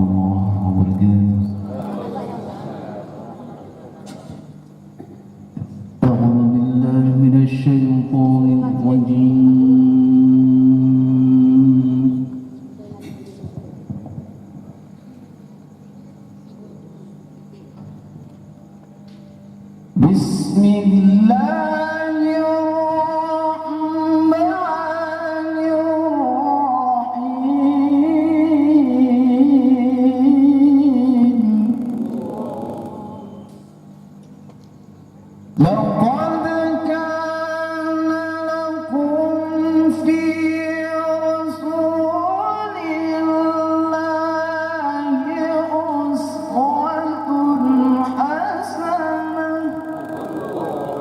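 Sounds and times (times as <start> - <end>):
man reciting melodically: 0.0 - 2.1, 6.0 - 12.4, 20.0 - 33.5, 35.6 - 51.0.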